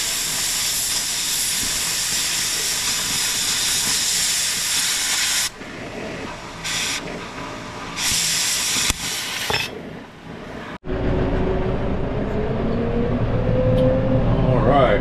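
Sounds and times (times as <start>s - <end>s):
hissing noise: 0.0s - 10.8s
engine running with rising whine: 0.0s - 15.0s.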